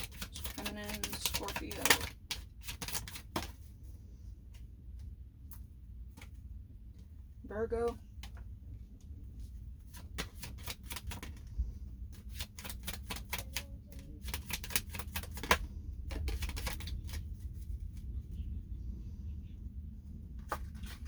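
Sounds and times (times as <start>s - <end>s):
cards being shuffled: 0.0s - 3.7s, 9.8s - 11.5s, 12.1s - 18.0s, 20.4s - 21.0s
low room hum: 0.0s - 21.0s.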